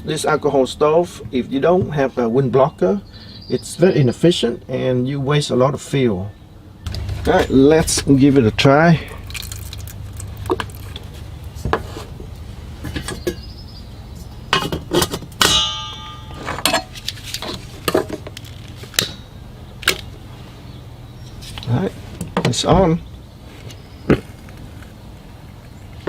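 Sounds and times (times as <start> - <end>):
low hum: 6.5 - 21.4
ringing metallic clang: 14.6 - 16.9.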